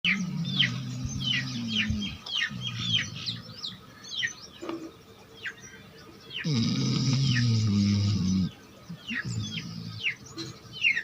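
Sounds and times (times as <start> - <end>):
small birds chirping: 0.0 - 11.0
dog snoring: 6.4 - 8.5.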